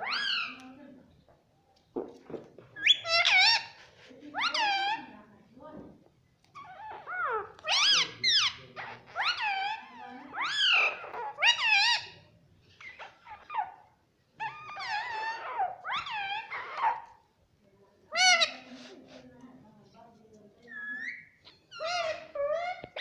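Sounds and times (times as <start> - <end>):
parakeet chirping calls: 0.0 - 0.7, 2.8 - 3.8, 4.4 - 5.2, 6.6 - 12.2, 14.4 - 17.2, 18.1 - 18.7, 20.7 - 23.0.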